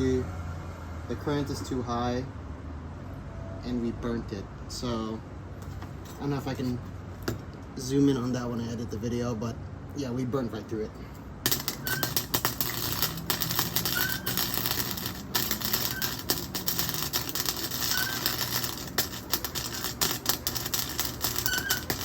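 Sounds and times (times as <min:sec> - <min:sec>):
welder arc crackling and popping: 0:11.4 - 0:22.0.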